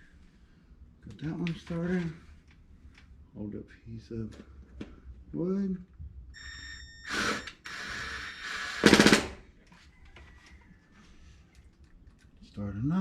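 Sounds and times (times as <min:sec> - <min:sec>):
power drill driving a screw: 0:06.4 - 0:09.4
loud rapid rattle: 0:07.2 - 0:09.4.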